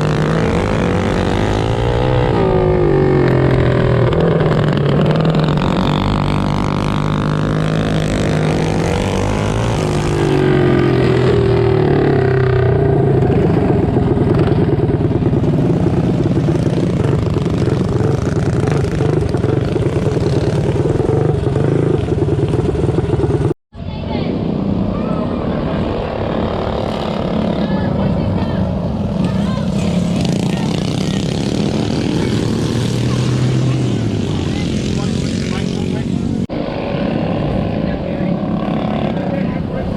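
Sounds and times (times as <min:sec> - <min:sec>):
small engines revving: 0:00.0 - 0:23.6, 0:24.3 - 0:39.9.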